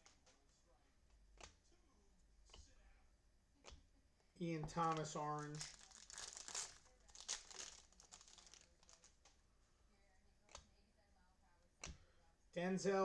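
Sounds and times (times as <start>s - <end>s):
trading cards crinkling and sliding: 4.7s - 9.4s.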